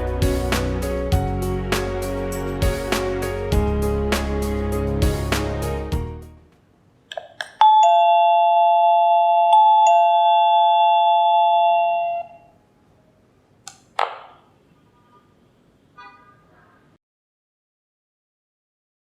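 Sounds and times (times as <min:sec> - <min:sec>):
background music: 0:00.0 - 0:06.5
two-note doorbell chime: 0:07.6 - 0:12.4.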